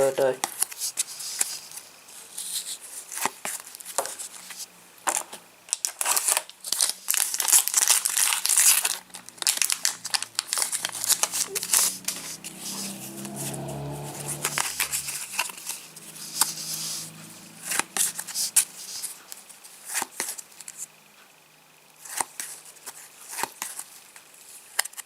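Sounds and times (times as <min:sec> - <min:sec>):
foil packet crinkling: 0:05.7 - 0:11.2.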